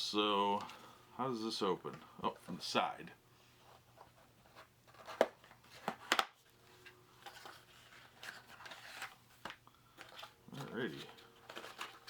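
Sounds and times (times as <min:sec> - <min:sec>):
cardboard rustling: 0:03.6 - 0:12.0.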